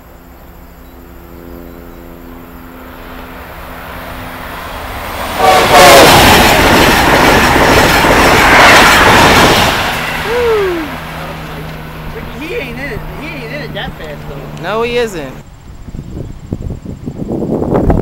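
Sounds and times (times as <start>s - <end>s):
high-speed train passing: 0.0s - 18.0s
train horn: 5.3s - 6.6s.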